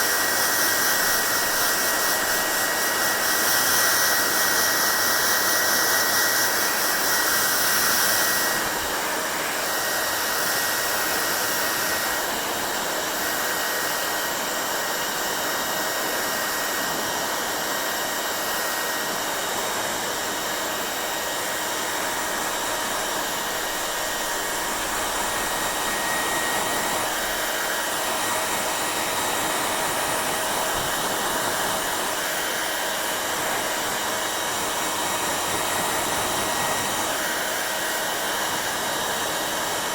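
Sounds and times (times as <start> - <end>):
hair dryer blowing: 0.0 - 39.9.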